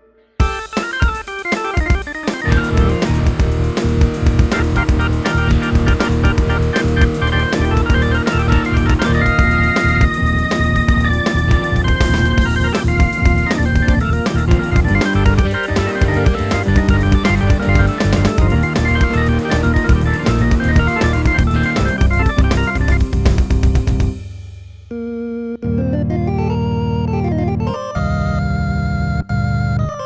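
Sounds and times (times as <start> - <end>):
organ-like synthesizer chords: 0.4 - 24.2, 24.9 - 30.0
steady drum pattern: 0.4 - 24.9.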